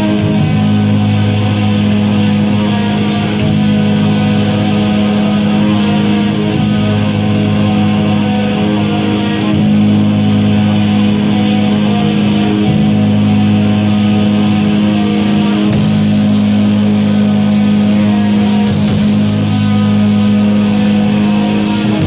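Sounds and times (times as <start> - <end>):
guitar chord: 0.0 - 22.0
live band music: 14.9 - 22.0.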